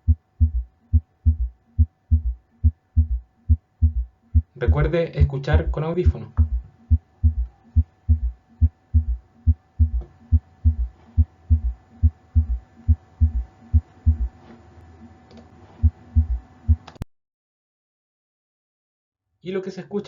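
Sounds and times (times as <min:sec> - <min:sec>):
fast heartbeat thumps: 0:00.0 - 0:14.4, 0:15.8 - 0:16.9.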